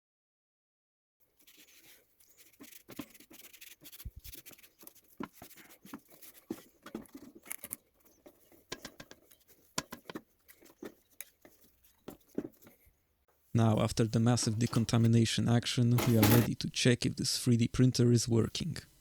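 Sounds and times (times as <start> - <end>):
scratching and rubbing: 1.2 - 13.1, 13.8 - 15.2, 15.8 - 16.5.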